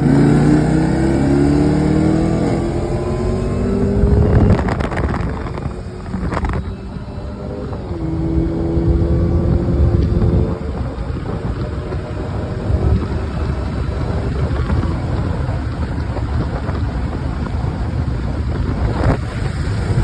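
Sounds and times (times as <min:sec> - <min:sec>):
engine rumbling while driving: 0:00.0 - 0:20.0
wind buffeting microphone: 0:00.0 - 0:20.0.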